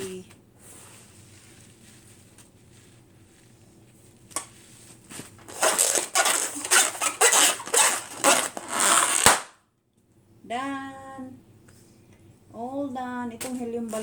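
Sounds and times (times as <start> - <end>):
rubbery balloon crinkling: 1.0 - 9.5
balloon pop: 7.2 - 9.6.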